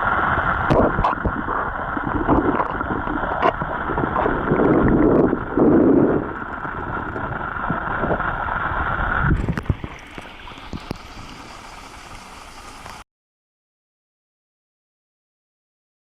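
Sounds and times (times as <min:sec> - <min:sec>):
wind on microphone: 0:00.0 - 0:11.6
rushing stream water: 0:00.0 - 0:13.0.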